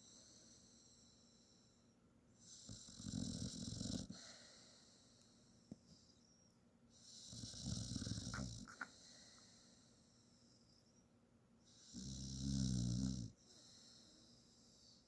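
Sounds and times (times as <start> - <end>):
dog snoring: 2.4 - 4.4, 7.0 - 8.9, 11.7 - 13.4.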